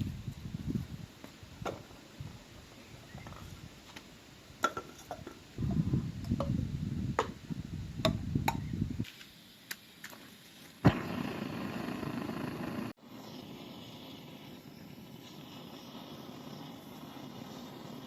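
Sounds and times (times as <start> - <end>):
steady hiss: 9.0 - 18.0.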